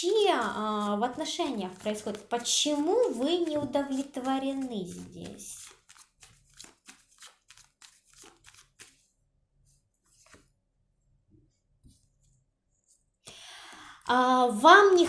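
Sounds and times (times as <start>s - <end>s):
cards flicking and rustling: 0.0s - 9.1s, 10.0s - 10.5s.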